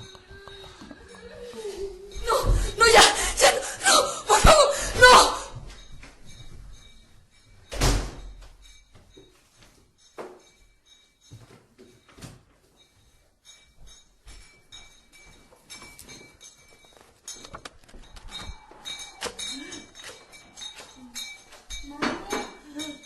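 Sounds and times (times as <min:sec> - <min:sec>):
knocks and hard clinks: 0:05.6 - 0:23.0.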